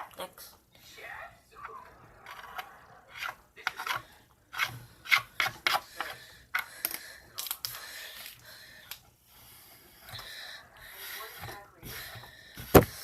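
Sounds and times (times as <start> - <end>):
rubbing and scraping strokes: 2.3 - 6.2.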